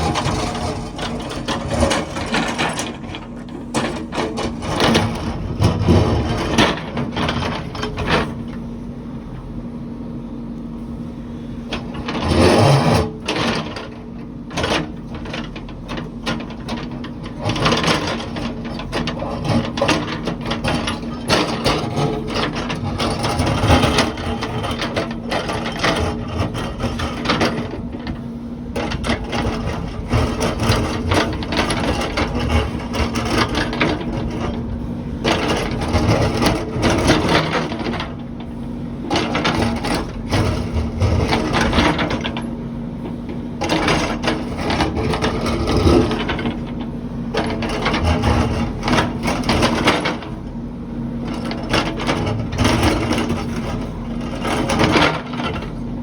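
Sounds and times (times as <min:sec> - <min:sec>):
clattering and scraping: 0:00.0 - 0:08.4, 0:14.5 - 0:38.5, 0:39.1 - 0:42.5
construction machine engine drone: 0:00.0 - 0:56.0.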